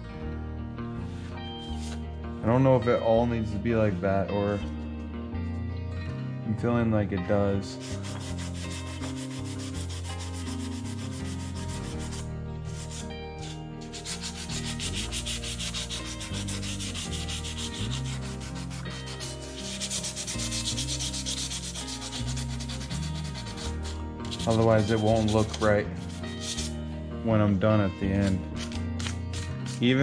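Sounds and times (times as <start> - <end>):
sandpaper rubbing on painted plastic: 7.8 - 26.8, 28.1 - 30.0.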